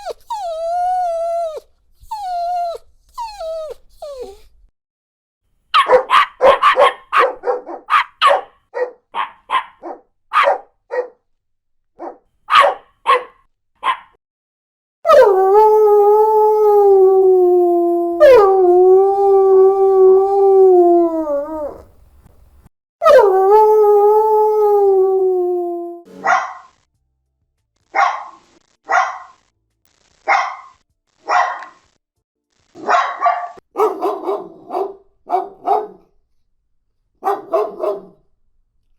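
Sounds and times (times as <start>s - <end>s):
dog barking: 5.7s - 11.2s, 12.0s - 14.2s, 26.2s - 26.7s, 27.9s - 29.4s, 30.3s - 31.8s, 32.8s - 36.1s, 37.2s - 38.2s
dog howling: 15.1s - 21.8s, 23.0s - 26.1s.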